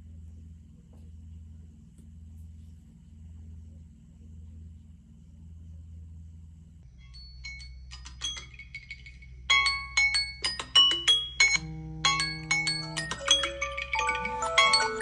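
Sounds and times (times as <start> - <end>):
marimba-like alarm melody: 9.5 - 15.0.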